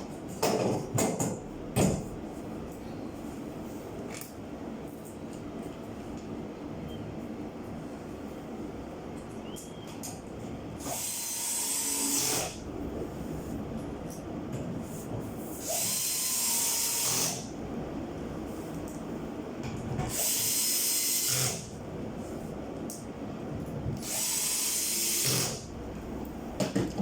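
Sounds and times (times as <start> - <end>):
power drill running: 10.8 - 12.6, 15.6 - 17.5, 20.1 - 21.7, 24.0 - 25.6.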